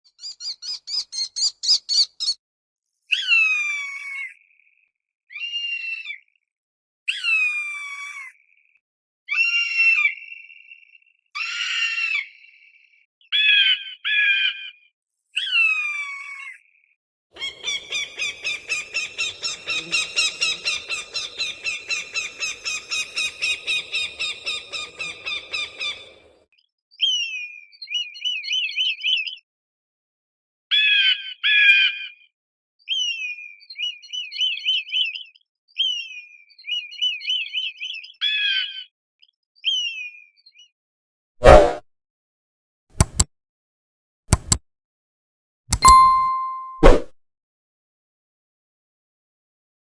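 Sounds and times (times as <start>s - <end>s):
hawk calls: 17.4s - 26.3s.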